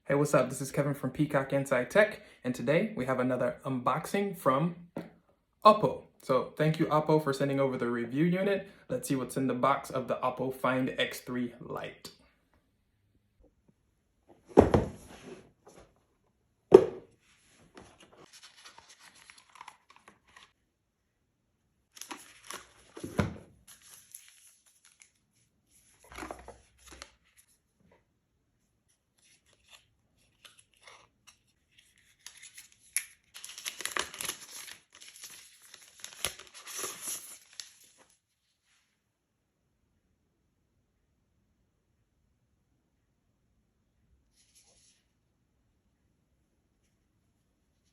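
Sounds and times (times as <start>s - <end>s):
knocks on box: 16.7s - 17.0s
packaging tearing and crinkling: 30.4s - 38.0s.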